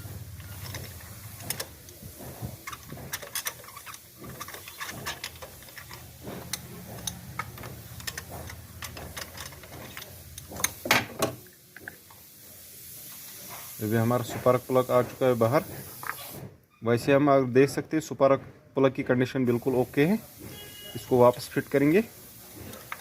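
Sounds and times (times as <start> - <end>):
ratchet wrench clicking: 0.0 - 11.0.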